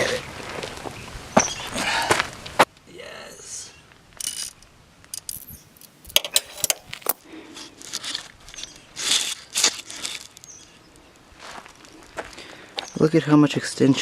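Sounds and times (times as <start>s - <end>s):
metal hand tools clinking: 4.2s - 7.2s
metal scraping: 5.2s - 10.4s.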